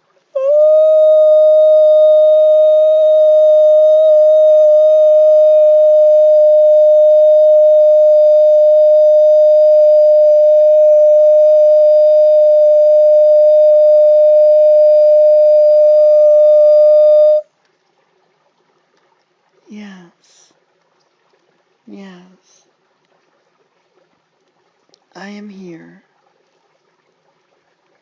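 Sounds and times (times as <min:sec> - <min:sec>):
steady pitched tone: 0:00.4 - 0:17.4.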